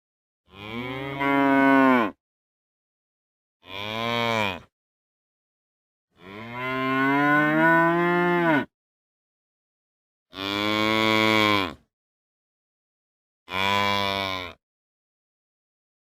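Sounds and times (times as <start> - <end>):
cow mooing: 0.5 - 2.2, 3.6 - 4.7, 6.2 - 8.7, 13.5 - 14.6.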